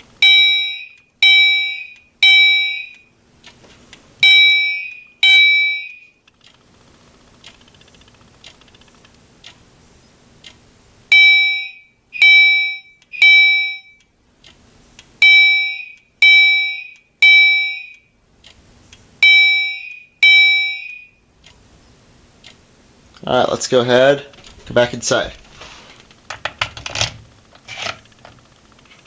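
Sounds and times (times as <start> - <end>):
fire alarm horns blasting: 0.2 - 3.1, 4.2 - 6.2, 11.1 - 14.0, 15.2 - 18.1, 19.2 - 21.2.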